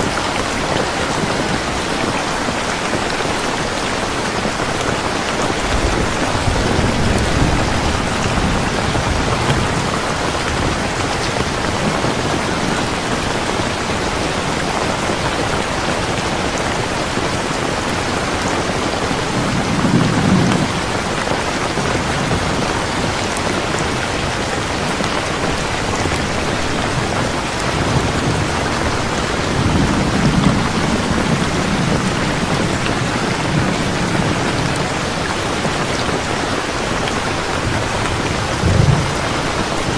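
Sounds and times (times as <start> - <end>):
heavy rain falling: 0.0 - 39.9
thunder rolling: 5.4 - 13.0, 18.0 - 35.7, 37.0 - 39.9.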